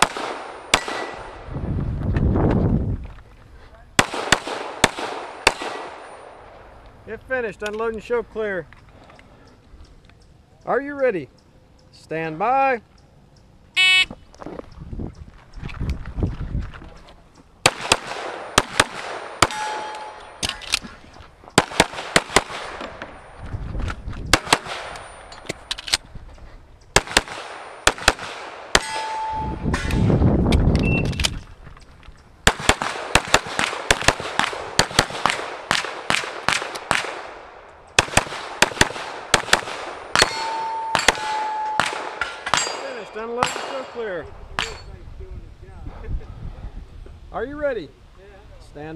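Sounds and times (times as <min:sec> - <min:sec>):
pistol shots: 0:00.0 - 0:01.5, 0:04.0 - 0:06.6, 0:17.6 - 0:20.7, 0:21.6 - 0:23.1, 0:24.3 - 0:25.1, 0:26.9 - 0:30.1, 0:32.4 - 0:44.8
steel targets ringing: 0:19.4 - 0:20.4, 0:28.7 - 0:30.2, 0:40.2 - 0:44.0.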